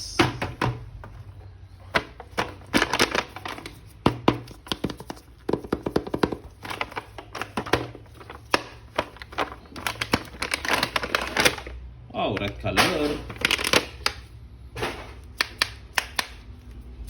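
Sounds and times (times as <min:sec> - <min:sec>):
packaging crinkling: 0:02.2 - 0:11.8, 0:12.4 - 0:14.3.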